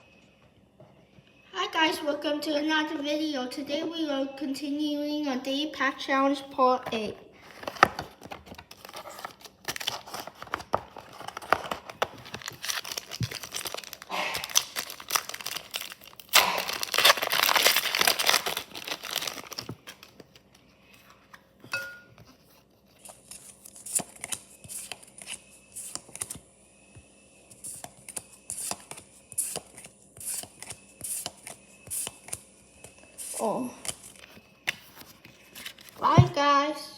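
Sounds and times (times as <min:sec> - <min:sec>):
foil wrapper tearing and crinkling: 0:08.6 - 0:20.2.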